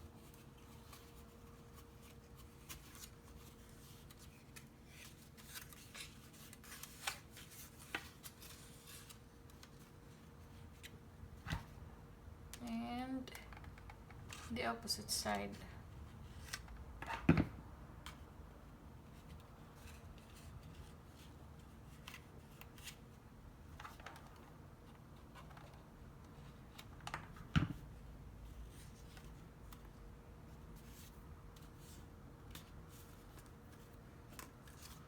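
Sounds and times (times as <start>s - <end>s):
paper rustling and clicking: 0.2s - 9.8s.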